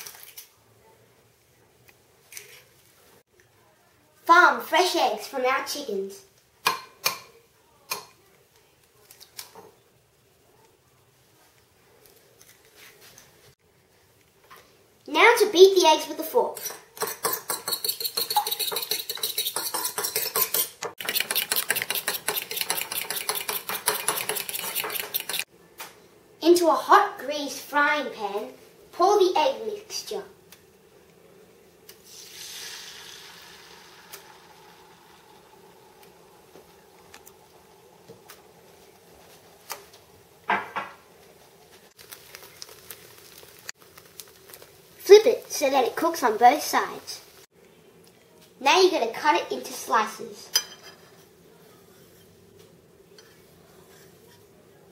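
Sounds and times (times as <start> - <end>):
utensil scraping pan: 16.5 - 25.5
fork clinking against bowl: 16.6 - 25.4
utensil tapping frying pan: 16.6 - 25.5.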